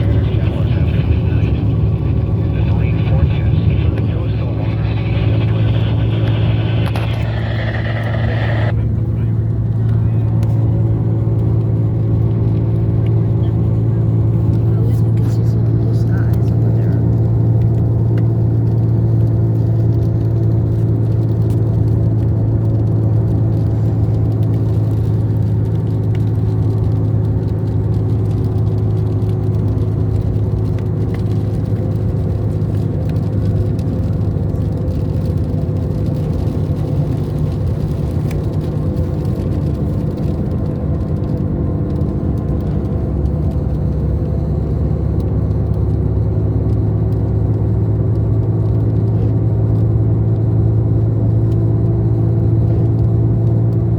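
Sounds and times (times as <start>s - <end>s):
steady low hum: 0.0s - 21.2s.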